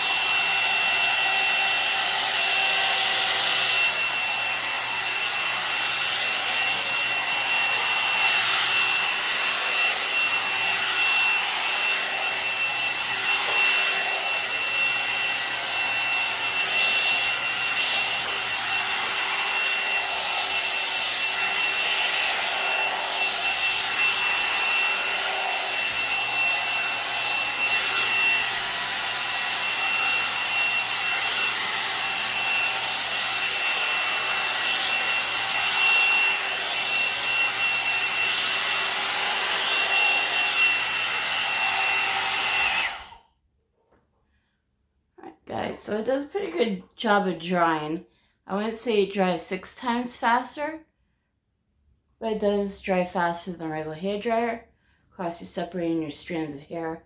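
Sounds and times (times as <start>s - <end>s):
hot air brush motor whine: 0.0s - 43.2s.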